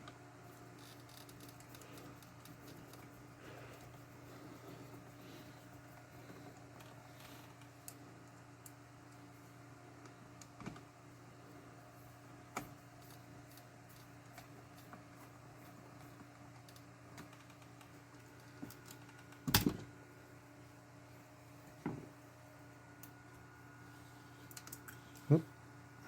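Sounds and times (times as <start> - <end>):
small parts clicking and tapping: 0.0 - 4.1, 16.0 - 19.8, 24.4 - 25.2
faint steady hum: 0.0 - 26.0.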